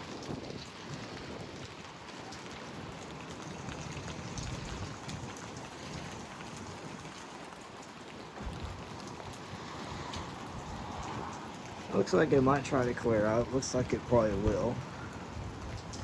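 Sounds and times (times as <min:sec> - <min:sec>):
steady rain: 0:00.0 - 0:16.0
gusts of wind: 0:02.7 - 0:07.4, 0:08.1 - 0:16.0.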